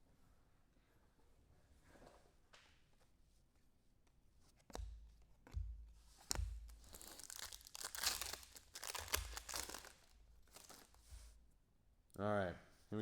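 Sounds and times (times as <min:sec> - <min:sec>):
foil wrapper tearing and crinkling: 0:06.8 - 0:11.0.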